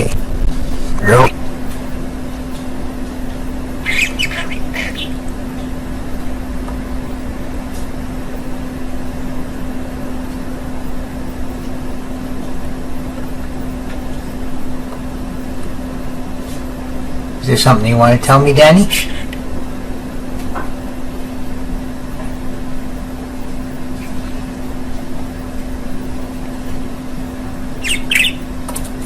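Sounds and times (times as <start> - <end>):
low hum with room noise: 0.0 - 29.0
budgerigar chirping: 3.8 - 5.2, 27.8 - 28.5.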